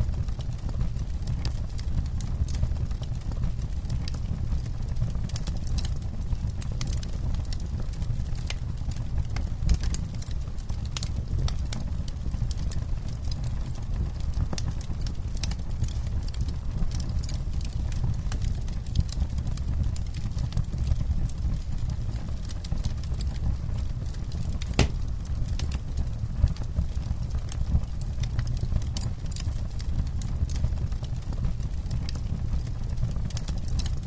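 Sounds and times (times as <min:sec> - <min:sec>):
campfire crackling and popping: 0:00.1 - 0:34.0.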